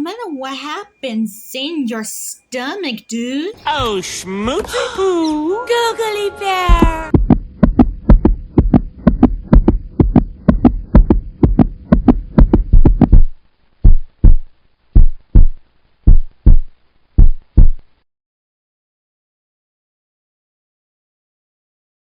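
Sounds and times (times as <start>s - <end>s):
heartbeat thumps: 6.6s - 17.9s.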